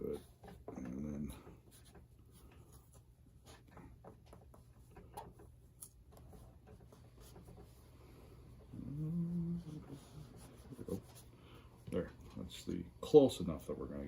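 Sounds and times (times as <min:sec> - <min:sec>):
electrical tape rustling and clicking: 0:00.0 - 0:08.8.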